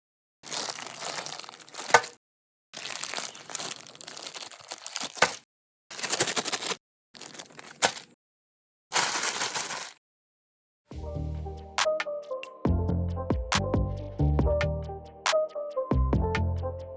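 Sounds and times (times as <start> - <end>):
meat grinder crushing candy: 3.2 - 6.8, 8.9 - 10.0.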